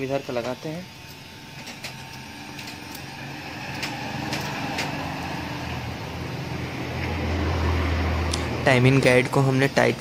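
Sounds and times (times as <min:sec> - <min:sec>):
low engine-like hum: 0:02.1 - 0:10.0.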